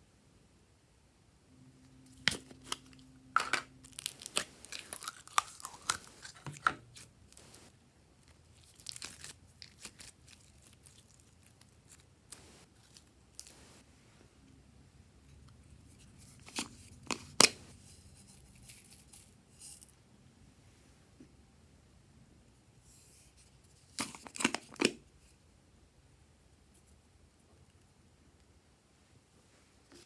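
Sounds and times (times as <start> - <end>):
slime squishing with crackles: 2.1 - 13.8.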